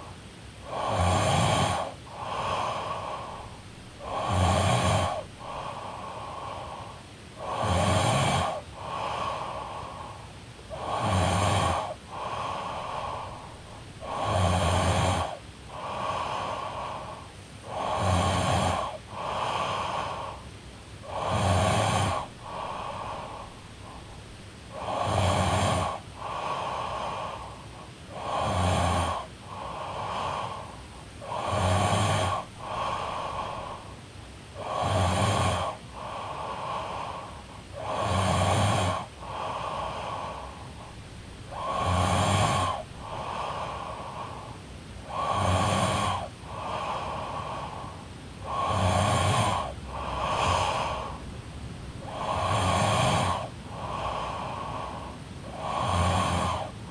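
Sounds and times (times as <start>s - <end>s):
soft breath: 0.0s - 56.9s
woman snoring: 0.6s - 34.0s, 34.6s - 56.9s.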